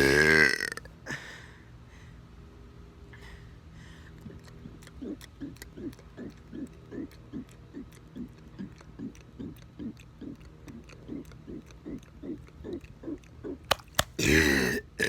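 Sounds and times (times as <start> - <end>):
man burping: 0.0 - 0.9, 14.2 - 15.0.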